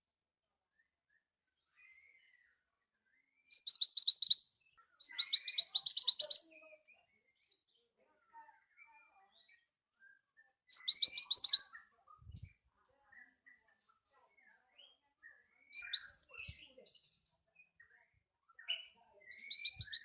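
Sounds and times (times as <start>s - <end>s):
soft bird chirps: 0.6s - 20.0s
bird trilling: 3.5s - 6.4s, 10.7s - 11.7s, 15.8s - 16.1s, 19.3s - 20.0s.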